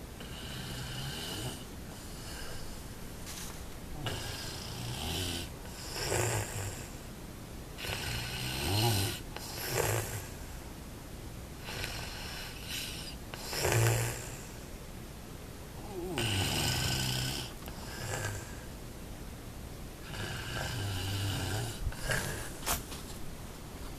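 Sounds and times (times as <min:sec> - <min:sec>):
person snoring: 0:00.2 - 0:02.8, 0:04.0 - 0:06.9, 0:07.8 - 0:10.3, 0:15.8 - 0:18.7, 0:20.0 - 0:22.6.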